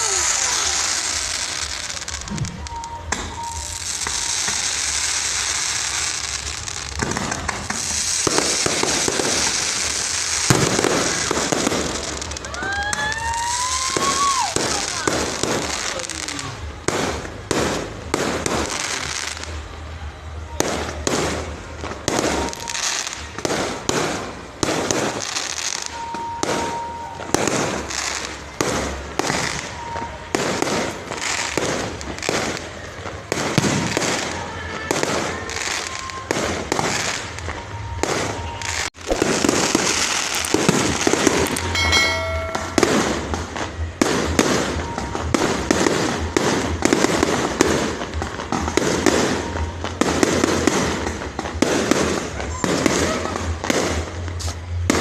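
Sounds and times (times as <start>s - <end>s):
fireworks bangs: 0.0s - 19.7s, 20.3s - 55.0s
short pitched tone: 41.2s - 43.2s.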